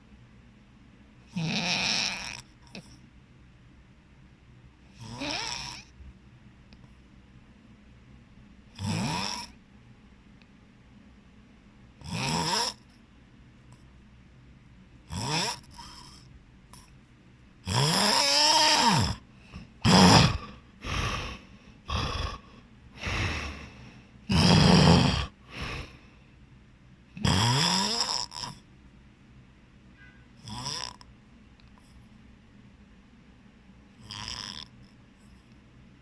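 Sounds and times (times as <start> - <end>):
person snoring heavily: 1.3 - 2.9, 4.9 - 5.9, 8.8 - 9.6, 12.0 - 12.9, 15.1 - 16.2, 17.6 - 26.0, 27.2 - 28.6, 30.4 - 31.0, 34.0 - 34.7.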